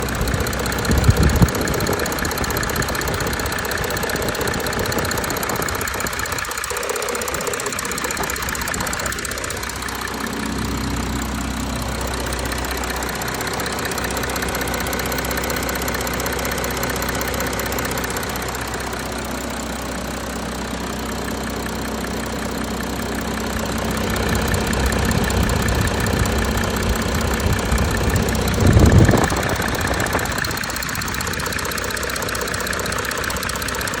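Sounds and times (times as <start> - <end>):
diesel engine idling: 0.0 - 34.0.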